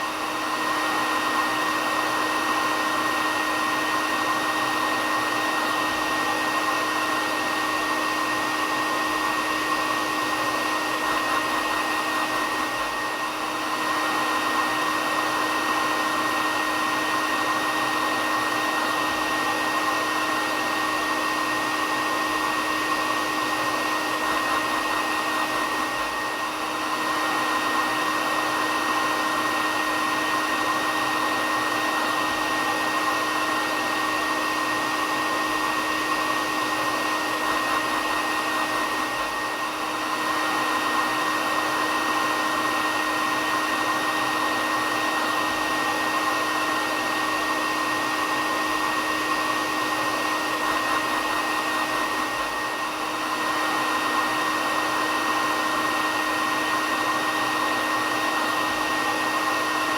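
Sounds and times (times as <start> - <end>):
hair dryer running: 0.0 - 59.9.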